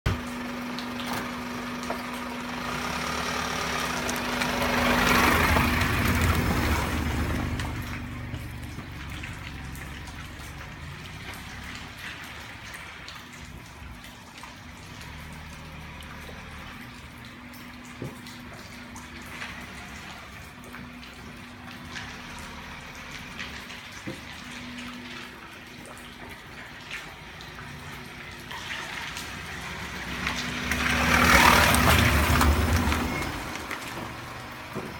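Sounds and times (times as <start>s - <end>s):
steady rain: 0.1s - 34.9s
vehicle approaching: 0.1s - 34.9s
tyres hissing on wet road: 0.2s - 24.0s, 27.0s - 34.9s
drips and taps: 7.3s - 34.9s.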